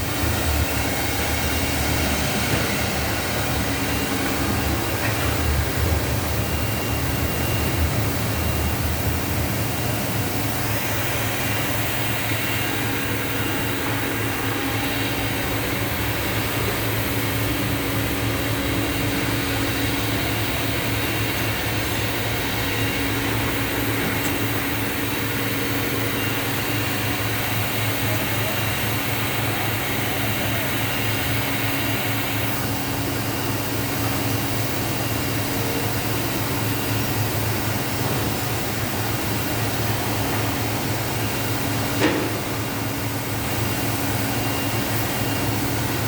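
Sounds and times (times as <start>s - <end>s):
machine humming: 0.0s - 29.8s.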